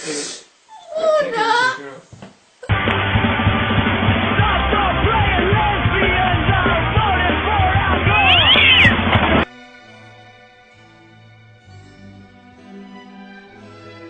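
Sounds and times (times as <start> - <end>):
cats meowing: 8.1 - 9.0.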